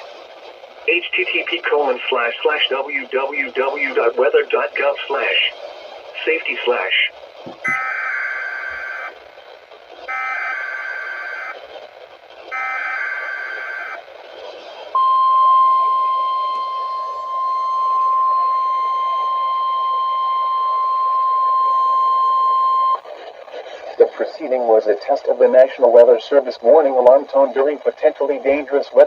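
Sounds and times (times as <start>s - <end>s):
radio static: 0.0s - 19.4s, 22.7s - 29.0s
steady warning alarm tone: 6.2s - 9.4s, 10.0s - 14.2s, 14.9s - 23.0s.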